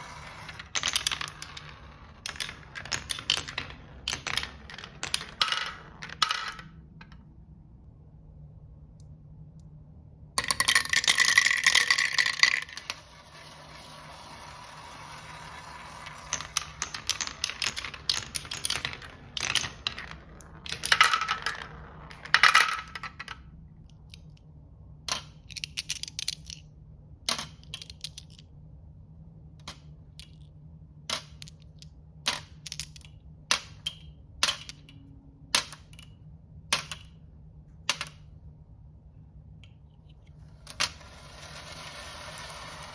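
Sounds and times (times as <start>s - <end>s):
marbles clacking together: 0.0s - 6.7s, 10.4s - 24.4s, 40.6s - 42.9s
marbles rolling rattle: 0.0s - 6.7s, 10.4s - 23.4s, 40.4s - 42.9s.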